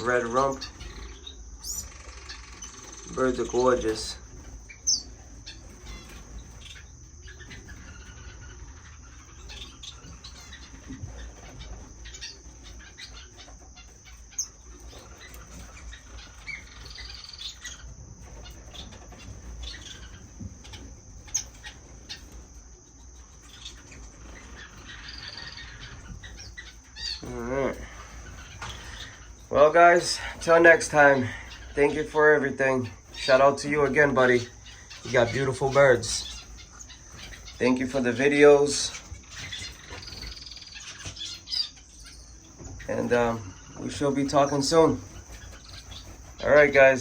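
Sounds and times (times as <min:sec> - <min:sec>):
finches chirping: 0:00.0 - 0:47.0.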